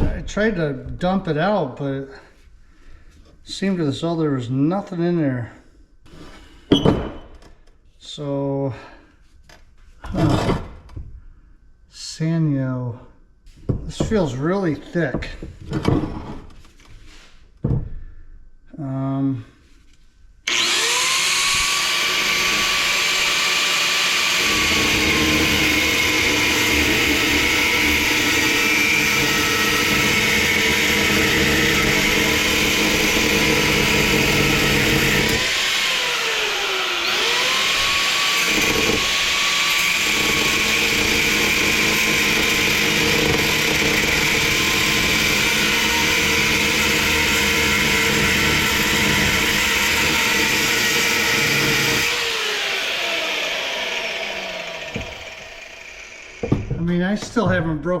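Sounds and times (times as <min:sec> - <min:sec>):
angle grinder cutting steel: 0:20.5 - 0:56.8.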